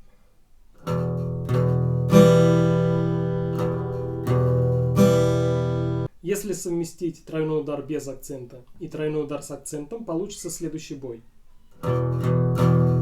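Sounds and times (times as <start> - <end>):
acoustic guitar strumming: 0.8 - 6.1, 11.6 - 13.0.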